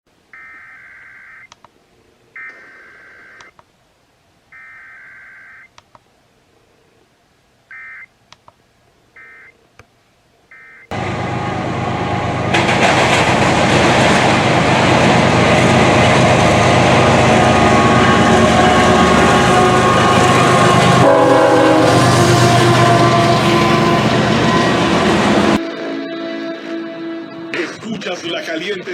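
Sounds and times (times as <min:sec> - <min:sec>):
loud dense steady tones: 0:14.6 - 0:28.9.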